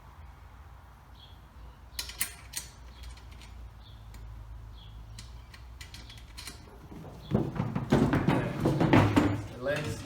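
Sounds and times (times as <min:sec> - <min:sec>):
metal parts clicking and rattling: 0:02.0 - 0:04.3, 0:05.1 - 0:07.2.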